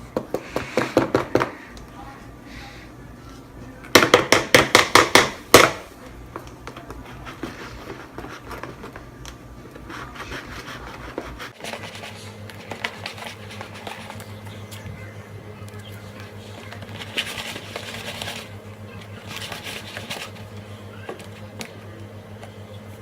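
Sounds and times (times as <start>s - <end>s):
scraping and stirring in bowl: 9.7s - 23.0s.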